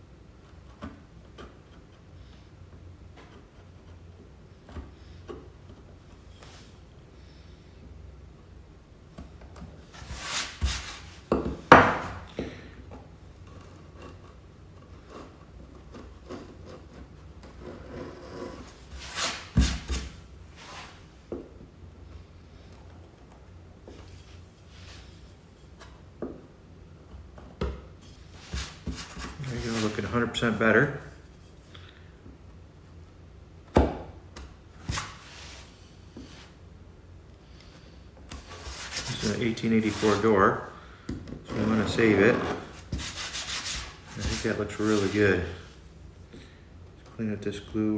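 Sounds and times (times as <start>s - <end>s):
chisel scraping wood: 10.0s - 11.1s, 13.5s - 20.9s, 28.3s - 31.0s, 38.3s - 40.6s, 41.5s - 45.7s
hand tools knocking on wood: 11.4s - 12.2s.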